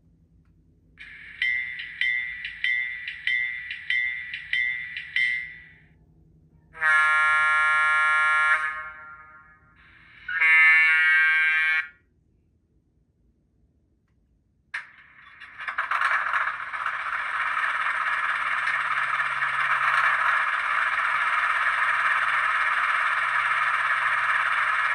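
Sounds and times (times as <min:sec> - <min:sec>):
locomotive bell ringing: 0:01.0 - 0:05.9, 0:15.5 - 0:24.9
locomotive horn blasts: 0:06.7 - 0:09.6, 0:10.3 - 0:12.0.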